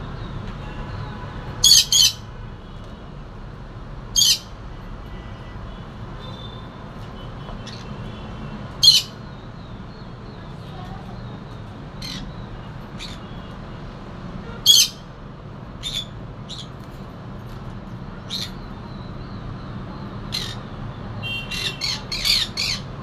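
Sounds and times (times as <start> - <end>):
parrot squawking: 1.6 - 2.2, 4.2 - 4.5, 8.8 - 9.2, 12.0 - 12.3, 14.6 - 15.1, 15.8 - 16.7, 18.3 - 18.6, 20.3 - 20.6, 21.5 - 22.9.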